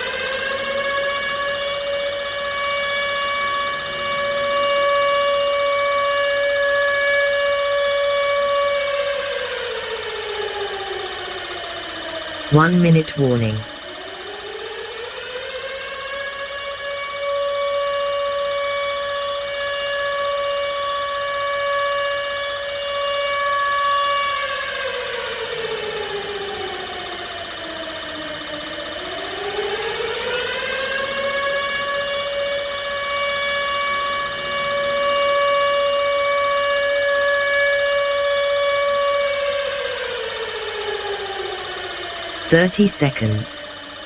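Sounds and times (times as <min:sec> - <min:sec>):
civil defense siren: 0:00.4 - 0:04.9.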